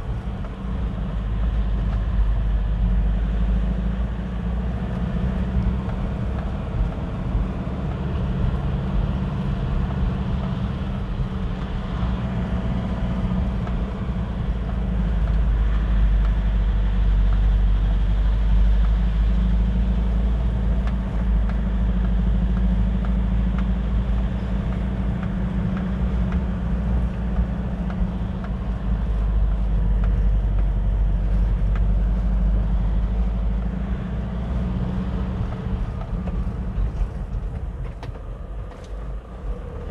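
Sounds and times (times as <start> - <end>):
car engine running: 0.0 - 15.8, 20.0 - 39.9
tyre and road noise: 0.0 - 39.9.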